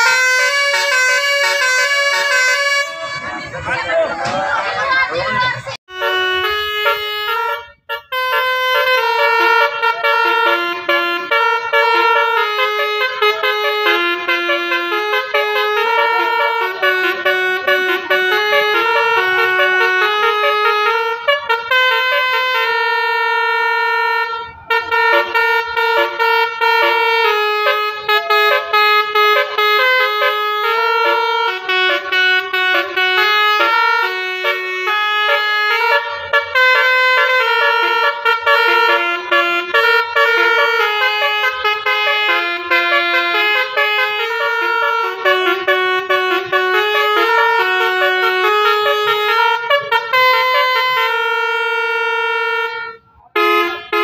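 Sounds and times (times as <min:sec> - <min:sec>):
musical bus horn melody: 0:00.0 - 0:54.0.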